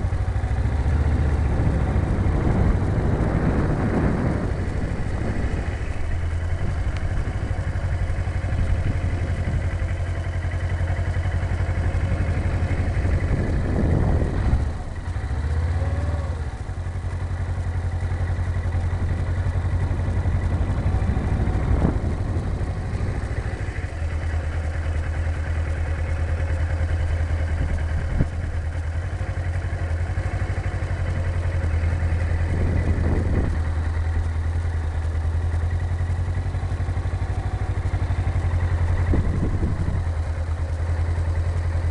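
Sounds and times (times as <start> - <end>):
motorcycle engine at low speed: 0.0 - 41.9.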